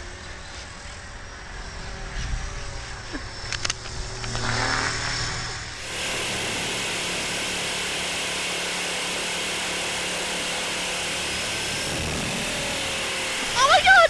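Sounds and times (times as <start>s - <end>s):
electric motor whine: 0.0s - 14.0s
rotor and wind noise: 0.0s - 14.0s.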